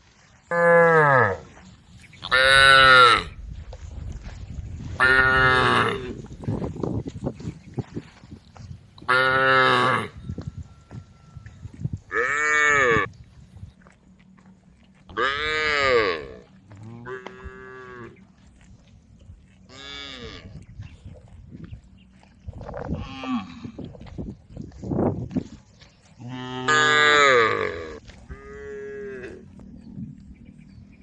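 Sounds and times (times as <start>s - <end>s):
cattle mooing: 5.0s - 6.2s, 9.1s - 10.2s, 12.1s - 13.1s, 15.1s - 18.2s, 19.7s - 20.6s, 26.2s - 29.6s.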